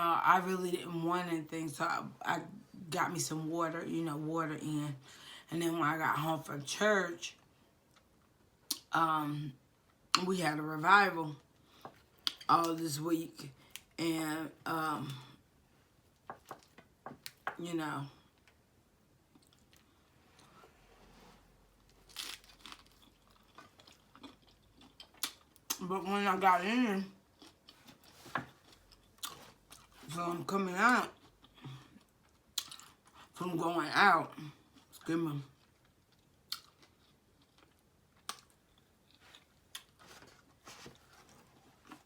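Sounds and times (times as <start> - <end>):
crunching and chewing food: 19.3 - 20.5, 21.8 - 26.0, 27.1 - 30.4, 31.0 - 33.4, 34.4 - 42.0
wet chewing: 22.2 - 25.8.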